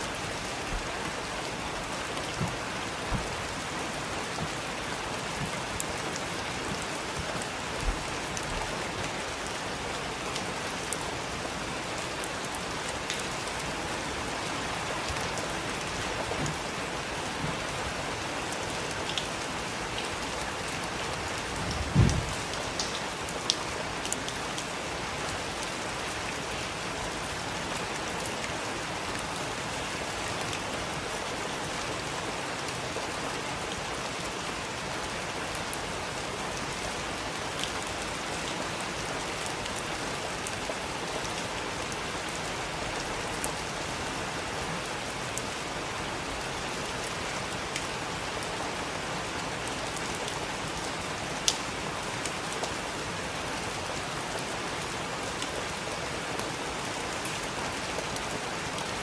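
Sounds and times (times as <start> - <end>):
heavy rain falling: 0.0 - 59.0
low thump: 2.4 - 3.4, 21.9 - 22.3.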